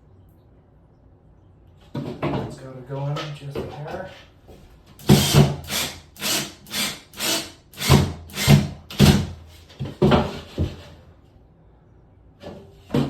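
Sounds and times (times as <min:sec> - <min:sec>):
drill-driver short pulses: 0:05.0 - 0:09.3.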